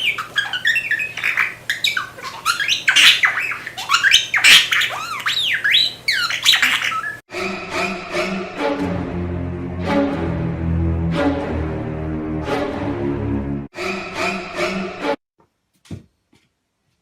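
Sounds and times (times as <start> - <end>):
bird squawking and chirping: 0.0 - 7.2.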